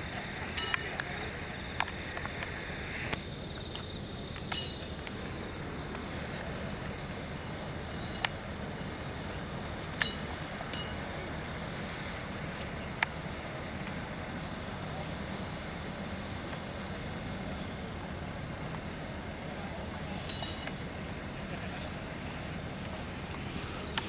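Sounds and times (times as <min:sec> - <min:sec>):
steel striking steel: 0:00.5 - 0:01.2, 0:04.4 - 0:05.0, 0:09.9 - 0:11.1, 0:20.2 - 0:20.8.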